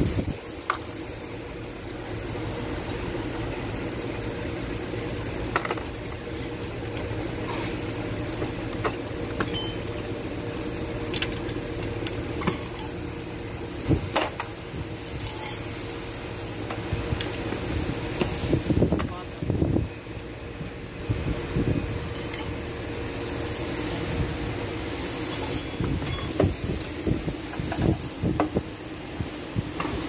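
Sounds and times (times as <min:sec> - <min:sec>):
steady fan-like hum: 0:00.0 - 0:30.0
metal tools clinking: 0:15.2 - 0:15.7, 0:22.1 - 0:22.6, 0:25.3 - 0:26.4.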